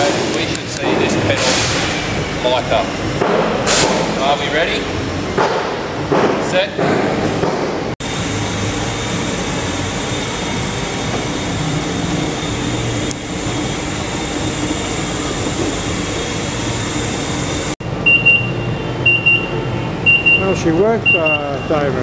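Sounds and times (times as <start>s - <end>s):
fire panel beeping: 17.8s - 21.9s.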